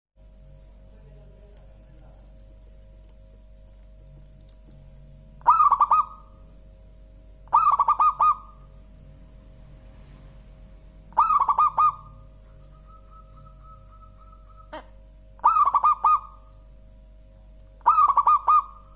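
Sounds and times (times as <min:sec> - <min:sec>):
dove cooing: 0:05.4 - 0:06.5, 0:07.4 - 0:08.8, 0:11.1 - 0:16.6, 0:17.8 - 0:18.9.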